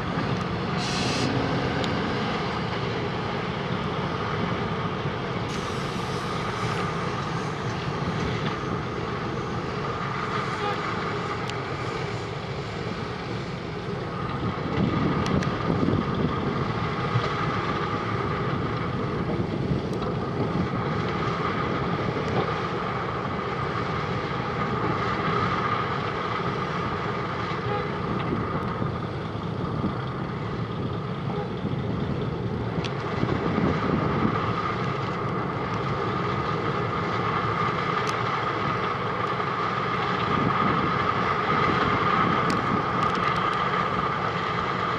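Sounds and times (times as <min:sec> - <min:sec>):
milling machine rumbling: 0:00.0 - 0:12.1
steady machine whine: 0:00.0 - 0:15.2.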